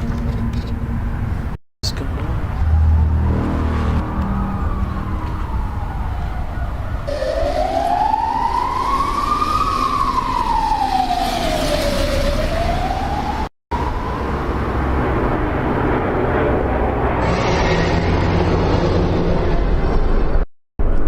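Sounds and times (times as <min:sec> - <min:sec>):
steady low rumble: 0:00.9 - 0:07.2
siren wailing: 0:02.5 - 0:15.2.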